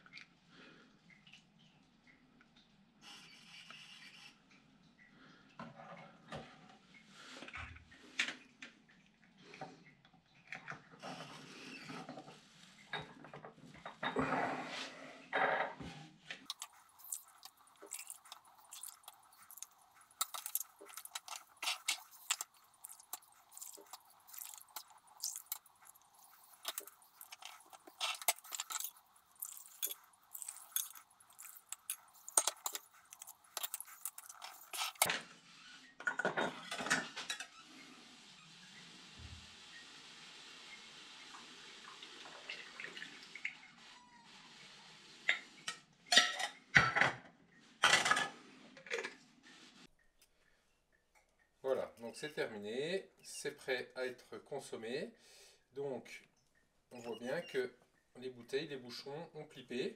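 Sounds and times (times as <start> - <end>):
glass bottles and lids clinking: 46.1 - 47.1.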